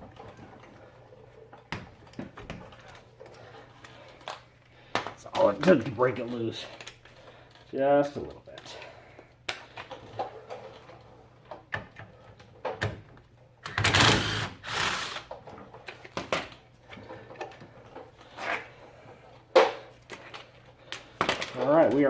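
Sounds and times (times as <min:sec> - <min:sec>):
impact wrench running: 0:13.7 - 0:15.3.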